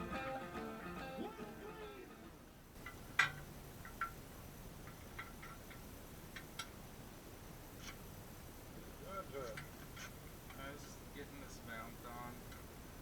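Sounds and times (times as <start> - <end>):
hand tools clicking and tapping: 2.8 - 4.2, 4.8 - 6.8.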